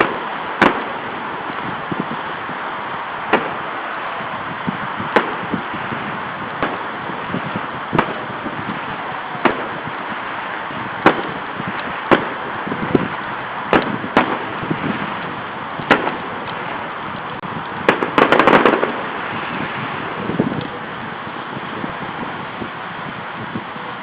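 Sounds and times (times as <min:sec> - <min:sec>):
firework bangs: 0:00.0 - 0:22.8
rapid firework crackling: 0:00.0 - 0:24.0.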